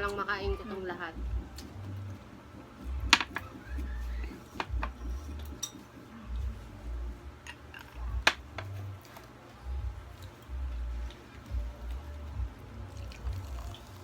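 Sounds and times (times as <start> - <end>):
low thumps: 0.0 - 5.6
cutlery clicks and clinks: 5.4 - 6.0.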